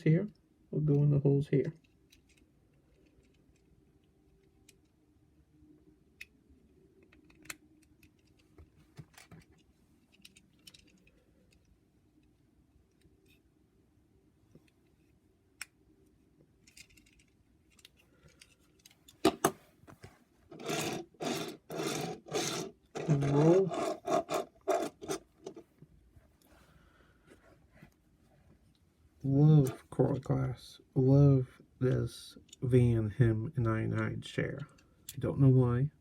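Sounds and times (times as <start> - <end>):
toy wheels rolling on a surface: 20.5 - 25.6.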